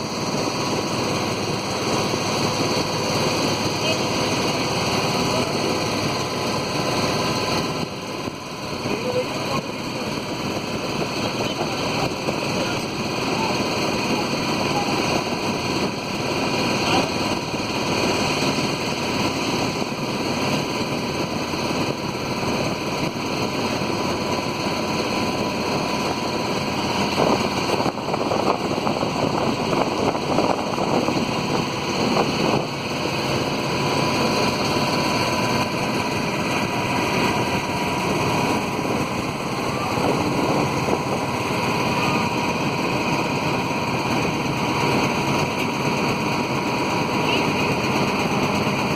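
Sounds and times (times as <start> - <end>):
boat motor running: 0.0 - 48.9
wind buffeting microphone: 9.6 - 47.1.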